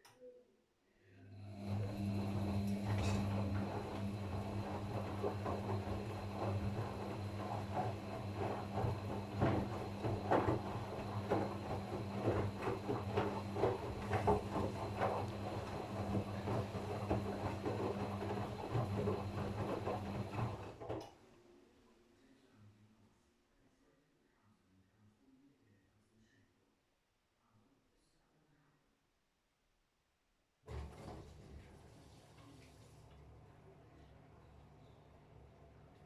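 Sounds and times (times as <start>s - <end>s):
washing machine running: 1.3s - 21.1s, 30.7s - 36.0s.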